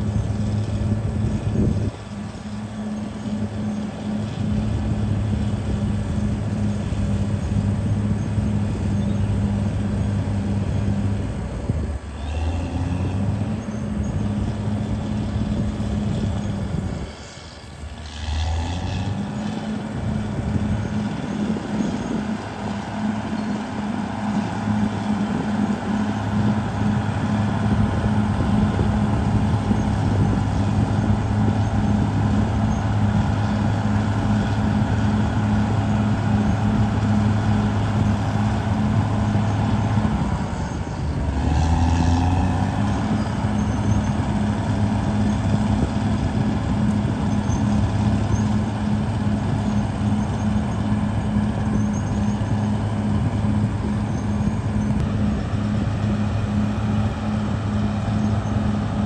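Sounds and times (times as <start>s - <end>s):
bulldozer diesel engine droning: 0.0s - 59.0s.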